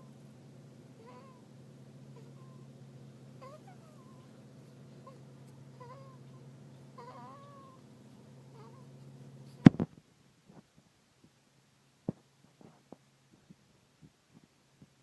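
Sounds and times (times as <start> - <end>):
low steady hum: 0.0 - 15.0
baby snoring squeakily: 1.0 - 1.5, 2.2 - 2.7, 3.4 - 4.4, 5.0 - 5.2, 5.8 - 7.8, 8.4 - 8.9.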